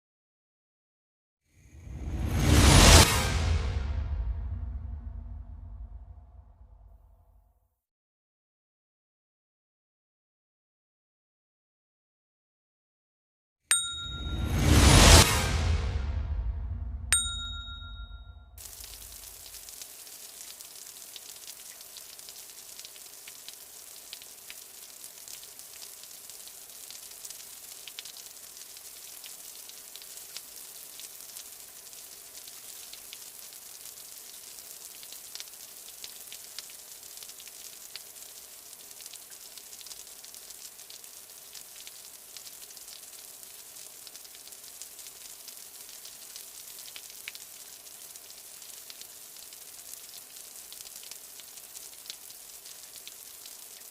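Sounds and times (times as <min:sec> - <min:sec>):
light rain falling: 0:17.2 - 0:53.9.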